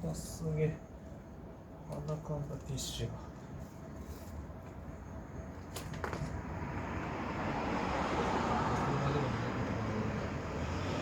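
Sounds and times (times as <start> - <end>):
road vehicle passing: 6.1 - 11.0.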